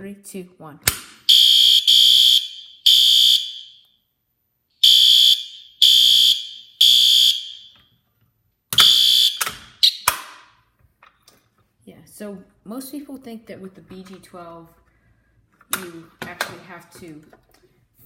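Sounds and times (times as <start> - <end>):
high-pitched fire alarm horn blasts: 1.3 - 4.0, 4.8 - 7.9, 8.8 - 10.0.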